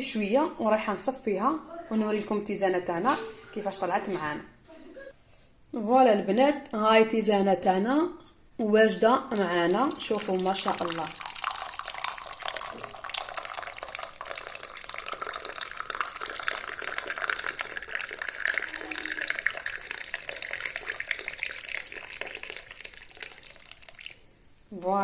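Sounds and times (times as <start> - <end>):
tea pouring and splashing: 9.2 - 24.8.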